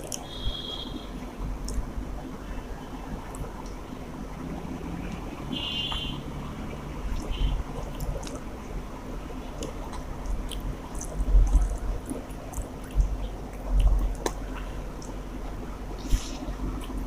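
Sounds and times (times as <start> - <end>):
wet chewing: 7.1 - 8.5, 9.5 - 15.2, 16.0 - 17.0.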